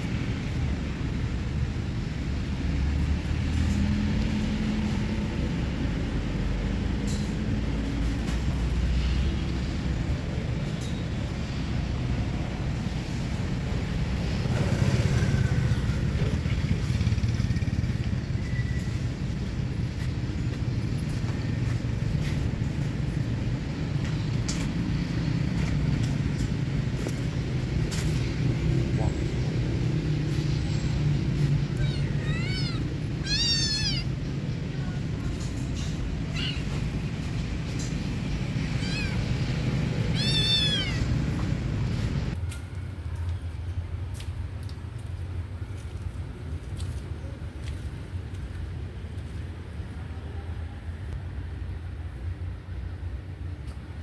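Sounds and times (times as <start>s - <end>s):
traffic rumble: 0.0s - 54.0s
cats meowing and yowling: 31.4s - 34.2s, 36.3s - 36.8s, 38.7s - 41.2s.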